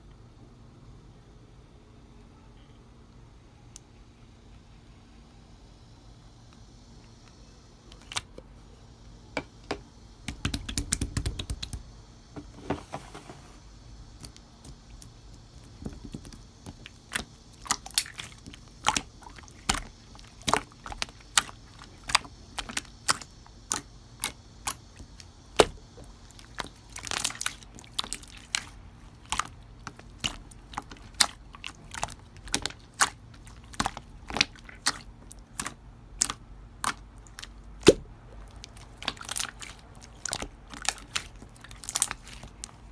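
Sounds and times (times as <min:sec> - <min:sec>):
low rumble of handling: 0:12.4 - 0:13.7.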